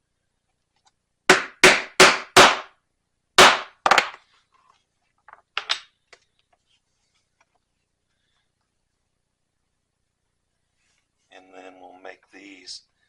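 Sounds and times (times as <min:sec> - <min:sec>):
mallet striking a metal punch: 0:01.3 - 0:02.7.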